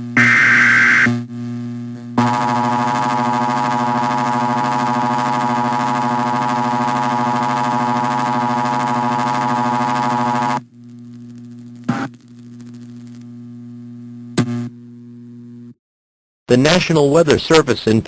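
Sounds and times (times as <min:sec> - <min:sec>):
low hum: 0:00.0 - 0:15.8
buzzy synthesized alert tone: 0:00.2 - 0:01.1.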